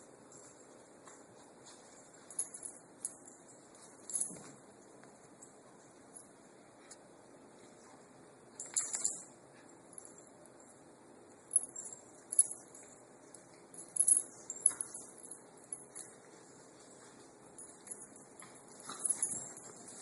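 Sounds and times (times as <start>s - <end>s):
metal dog tags jingling: 8.6s - 9.3s.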